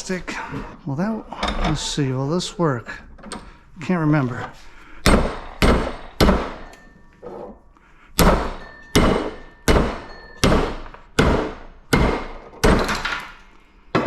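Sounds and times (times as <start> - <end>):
metallic ring: 5.4 - 7.6, 8.5 - 11.1.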